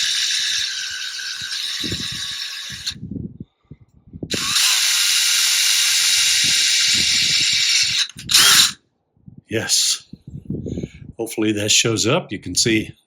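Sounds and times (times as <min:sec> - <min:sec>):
small power drill running: 0:00.0 - 0:03.0, 0:04.3 - 0:08.8.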